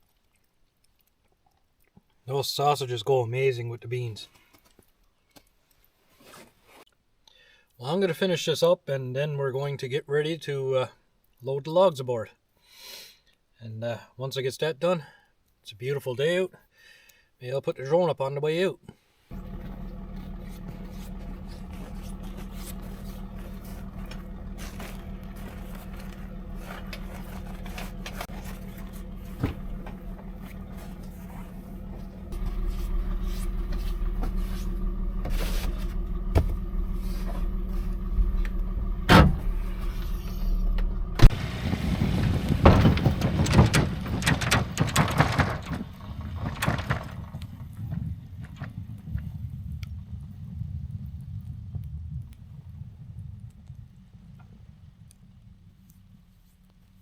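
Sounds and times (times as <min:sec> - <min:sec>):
heavy scraping and rattling: 0:19.3 - 0:49.8
knocks and scraping: 0:19.3 - 0:49.8
engine running: 0:19.3 - 0:57.0.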